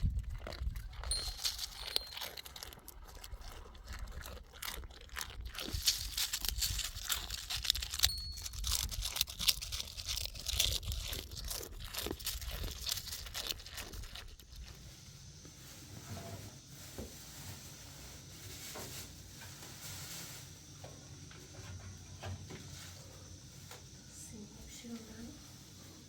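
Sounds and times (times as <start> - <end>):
small crackles: 0.0 - 15.9
crunching and scraping: 0.0 - 24.0.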